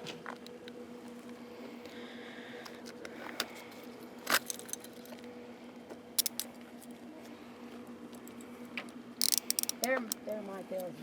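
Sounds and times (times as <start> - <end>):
clicks and rattles of small objects: 4.3 - 5.2, 6.2 - 7.0, 9.2 - 11.0.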